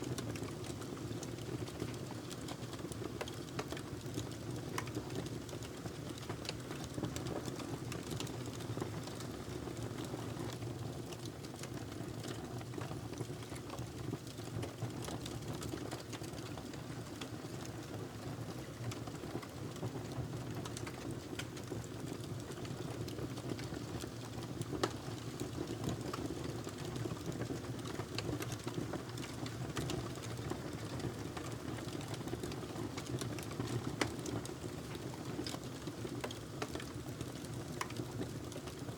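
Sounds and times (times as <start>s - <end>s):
fire crackles and pops: 18.8s - 38.8s.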